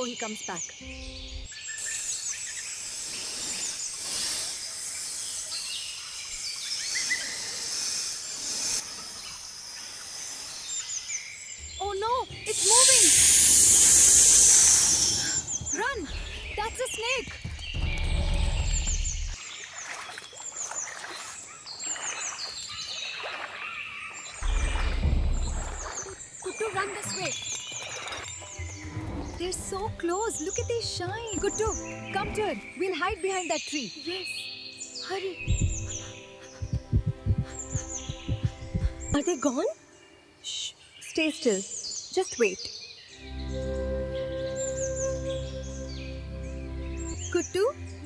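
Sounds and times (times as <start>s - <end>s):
bird chirps: 0.0s - 48.0s
insects hissing: 0.8s - 19.4s, 35.1s - 39.4s
high chirps: 11.6s - 19.4s, 35.0s - 39.2s
loud low rumble: 17.4s - 19.4s, 24.4s - 26.2s.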